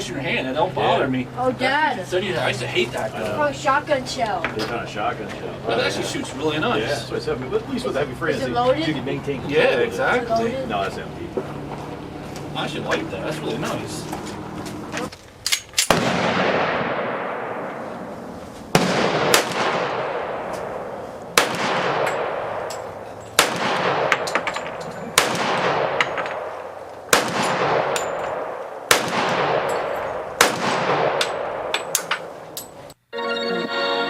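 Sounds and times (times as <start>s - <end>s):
pistol shots with echo: 15.9s - 18.1s, 18.7s - 32.1s.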